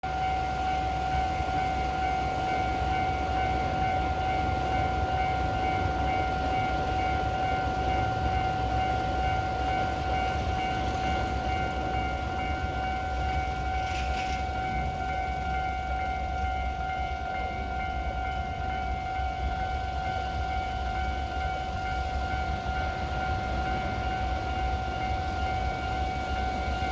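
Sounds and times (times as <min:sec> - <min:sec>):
freight train rumble: 0:00.0 - 0:26.9
level-crossing alarm ringing: 0:00.0 - 0:26.9.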